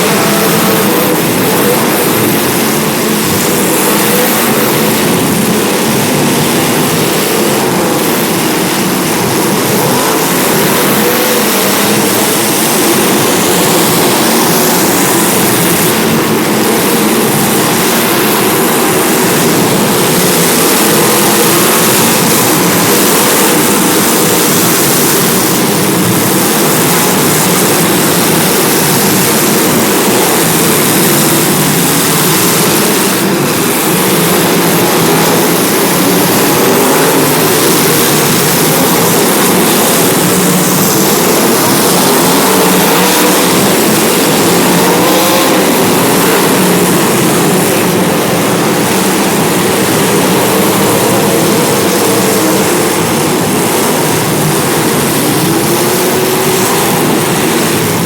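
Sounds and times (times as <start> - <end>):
many car engines running: 0.0 - 58.0.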